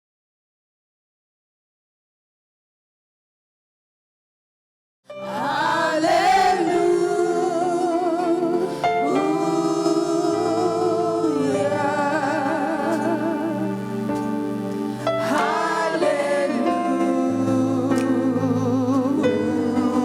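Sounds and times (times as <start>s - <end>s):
gospel singing with vibrato: 5.2s - 20.0s
instrumental backing: 5.4s - 20.0s.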